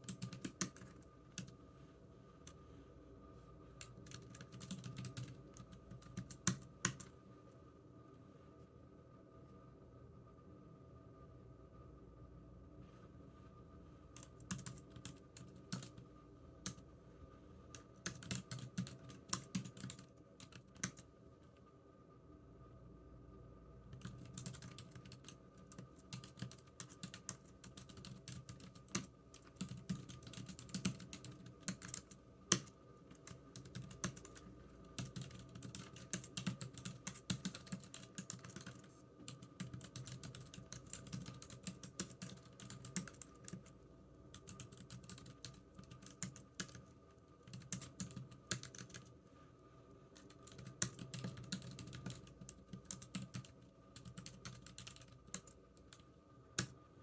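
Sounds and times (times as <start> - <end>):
typing on computer keyboard: 0.0 - 1.6, 3.8 - 7.1, 14.2 - 16.0, 17.7 - 21.1, 23.9 - 43.7, 44.3 - 46.8, 47.4 - 49.1, 50.2 - 56.0.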